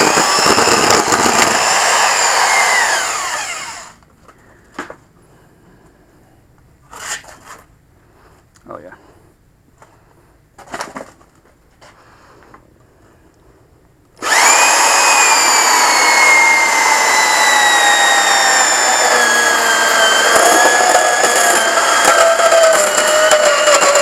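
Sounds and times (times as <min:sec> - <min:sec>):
band saw cutting tire: 0:00.0 - 0:04.0, 0:14.2 - 0:24.0.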